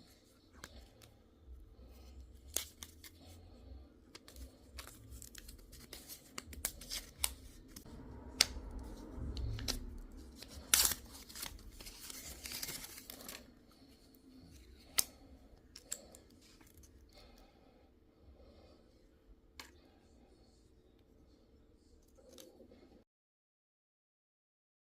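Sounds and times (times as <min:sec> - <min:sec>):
packaging tearing and rustling: 0:04.2 - 0:07.8, 0:09.5 - 0:13.6.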